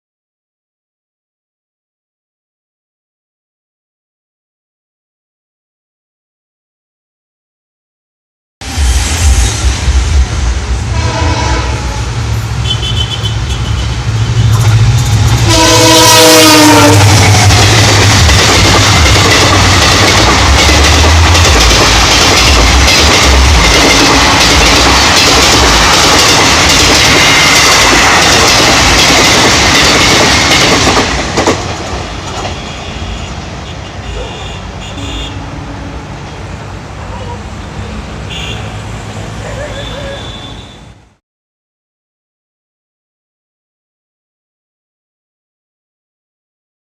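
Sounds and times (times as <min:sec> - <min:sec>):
diesel locomotive rumbling: 0:08.6 - 0:41.2
train horn: 0:10.8 - 0:14.6, 0:15.4 - 0:17.6, 0:32.1 - 0:36.4, 0:39.8 - 0:40.9
train wheels clattering: 0:16.9 - 0:32.9.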